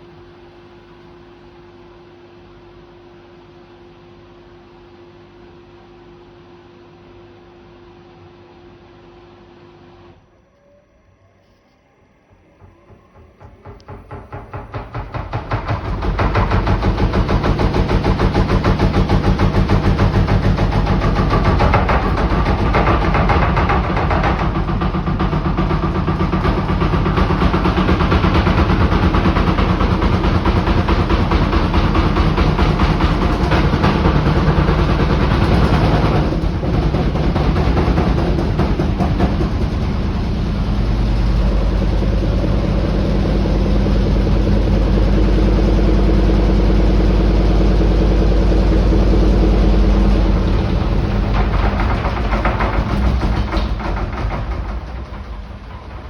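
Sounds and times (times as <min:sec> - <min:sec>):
washing machine knocking in spin: 0:12.6 - 0:56.0.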